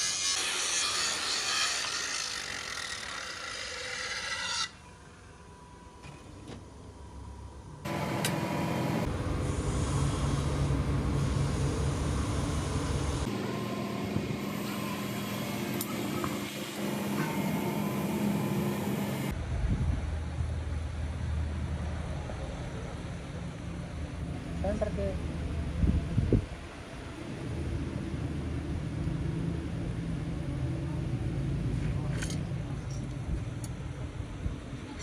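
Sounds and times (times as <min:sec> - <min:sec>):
machine humming steadily: 0:04.7 - 0:19.4.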